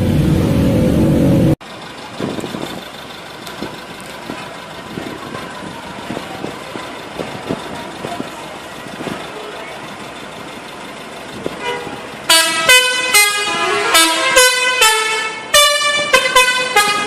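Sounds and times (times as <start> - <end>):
loud low-pitched sound: 0.0 - 1.6
bus engine idling: 0.0 - 17.0.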